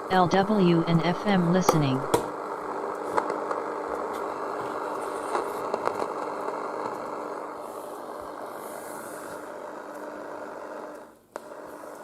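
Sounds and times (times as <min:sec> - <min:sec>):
radio static hiss: 0:00.0 - 0:02.2
static crackles: 0:00.0 - 0:07.8.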